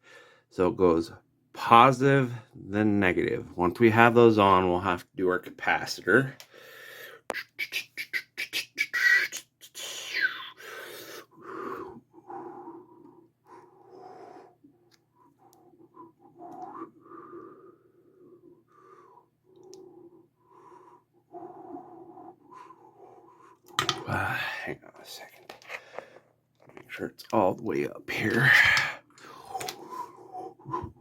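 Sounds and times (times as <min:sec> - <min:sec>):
person breathing wheezily: 0:06.5 - 0:07.3, 0:09.7 - 0:14.6, 0:28.3 - 0:31.0.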